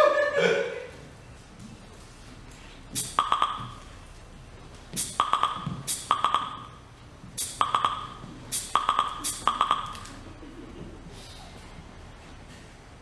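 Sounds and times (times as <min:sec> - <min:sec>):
high electronic ping: 0:03.0 - 0:04.0, 0:05.0 - 0:06.8, 0:07.4 - 0:10.1
electronic percussive pattern: 0:03.0 - 0:04.1, 0:05.0 - 0:06.8, 0:07.4 - 0:10.1.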